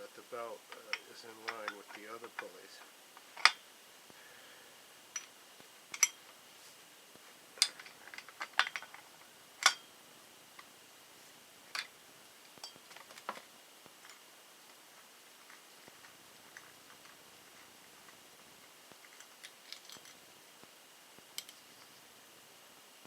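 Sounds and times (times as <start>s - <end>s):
metal tool clicks and clinks: 0.7s - 2.5s, 5.9s - 6.2s, 12.6s - 13.1s, 21.4s - 21.6s.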